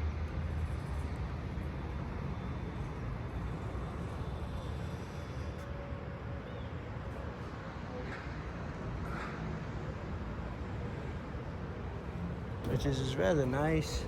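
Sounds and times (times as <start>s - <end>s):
distant city traffic rumble: 0.0s - 14.0s.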